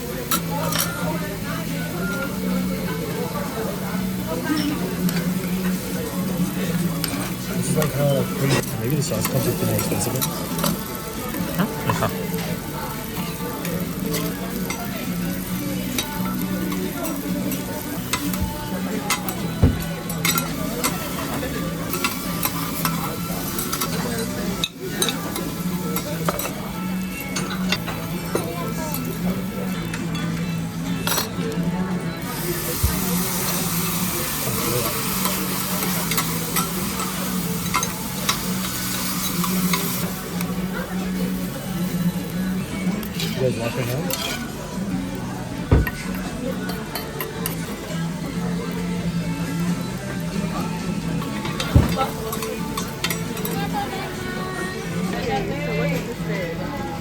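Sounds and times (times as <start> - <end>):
food sizzling on a hot griddle: 0.0 - 57.0
utensils scraping cooking plate: 44.0 - 44.6.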